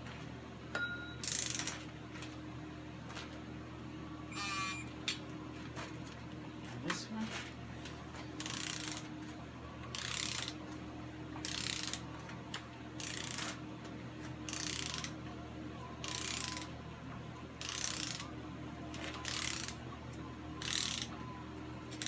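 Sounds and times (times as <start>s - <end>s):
torque wrench ratcheting: 1.2s - 1.8s, 8.4s - 9.0s, 9.9s - 10.5s, 11.4s - 12.0s, 13.0s - 13.6s, 14.5s - 15.1s, 16.0s - 16.7s, 17.6s - 18.2s, 19.2s - 19.8s, 20.6s - 21.1s.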